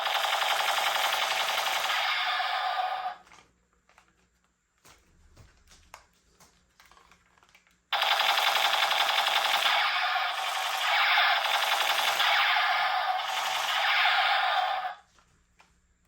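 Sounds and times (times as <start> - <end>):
toy gun full-auto firing: 0.0 - 3.2, 8.0 - 15.0
toy gun plastic clicks: 0.0 - 3.4.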